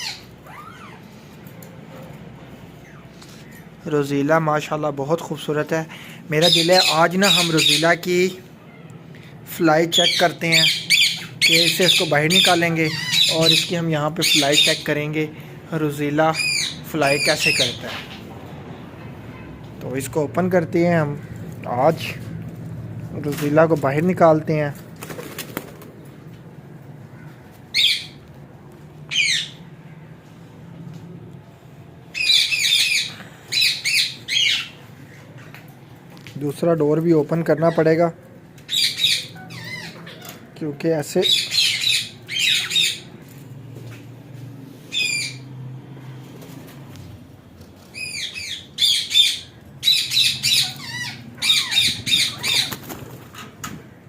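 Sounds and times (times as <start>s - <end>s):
parrot squawking: 0.0s - 1.2s, 6.4s - 8.0s, 10.0s - 14.8s, 16.4s - 18.2s, 27.7s - 28.2s, 29.1s - 29.6s, 32.1s - 34.8s, 38.7s - 40.5s, 41.2s - 43.1s, 44.9s - 45.4s, 47.9s - 52.8s.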